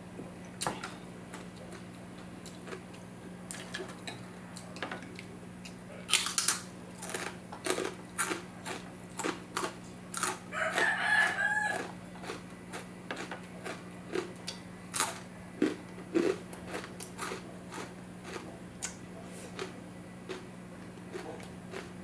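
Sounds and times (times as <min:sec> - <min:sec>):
chewing crisp pork crackling: 0:01.2 - 0:22.0
rooster crowing: 0:10.5 - 0:12.0.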